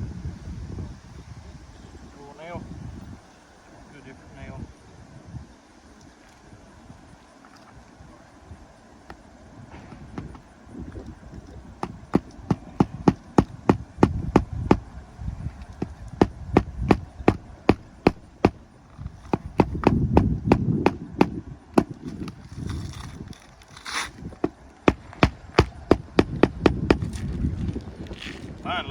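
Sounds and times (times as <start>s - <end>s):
hammer striking nail: 9.8s - 10.4s, 11.8s - 14.8s, 15.8s - 18.6s, 19.2s - 22.4s, 24.4s - 27.1s.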